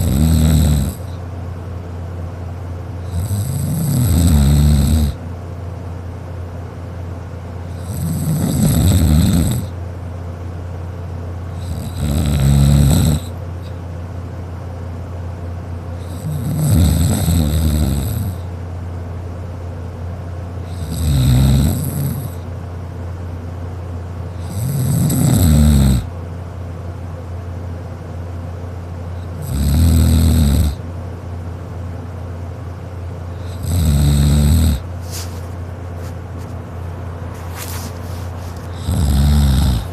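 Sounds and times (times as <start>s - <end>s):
person snoring: 0.0s - 1.2s, 3.1s - 5.2s, 7.7s - 9.7s, 11.6s - 13.4s, 16.0s - 18.4s, 20.7s - 22.4s, 24.4s - 26.1s, 29.3s - 30.8s, 33.4s - 34.9s, 38.6s - 39.9s
steady low hum: 0.0s - 39.9s.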